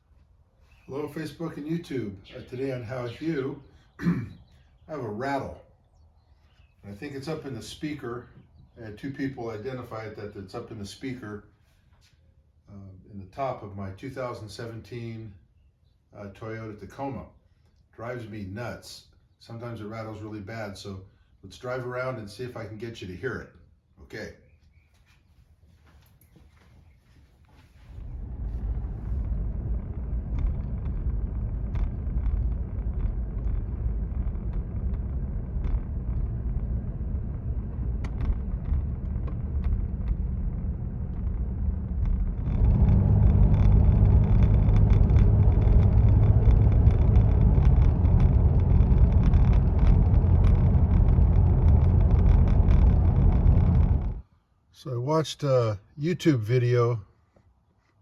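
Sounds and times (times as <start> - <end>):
road and drivetrain rumble: 27.6 - 54.3.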